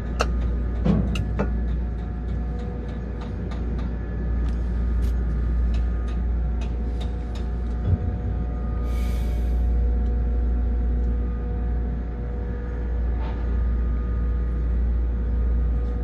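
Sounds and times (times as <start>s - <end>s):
electrical hum: 0.0s - 16.0s
low rumble of strong wind: 0.0s - 16.0s.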